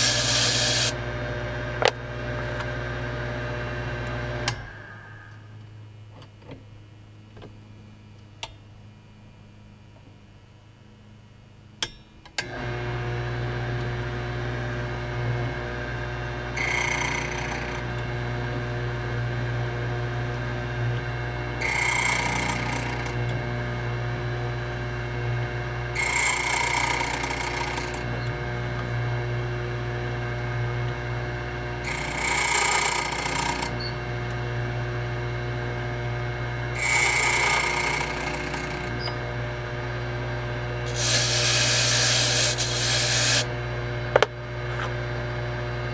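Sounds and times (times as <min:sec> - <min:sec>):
motor humming: 0:00.0 - 0:01.0, 0:16.6 - 0:18.0, 0:21.6 - 0:23.4, 0:25.9 - 0:28.6, 0:31.8 - 0:34.4, 0:36.8 - 0:39.3
cutter grinding metal key: 0:16.6 - 0:17.9, 0:21.6 - 0:23.2, 0:26.0 - 0:28.2, 0:31.8 - 0:33.9, 0:36.8 - 0:39.2.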